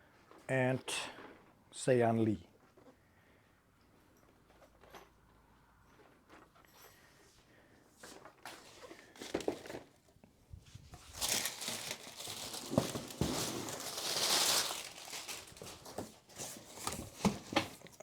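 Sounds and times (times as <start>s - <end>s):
packaging crinkling and rustling: 8.2s - 18.0s.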